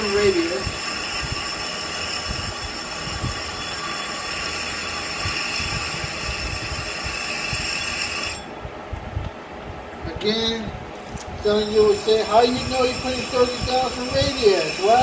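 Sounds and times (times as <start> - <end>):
metal lathe whining: 0.0 - 8.5, 11.6 - 15.0.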